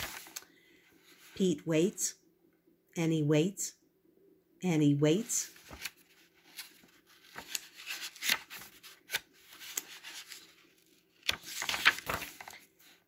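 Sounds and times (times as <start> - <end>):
paper pages rustling: 0.0 - 1.4, 5.5 - 13.0.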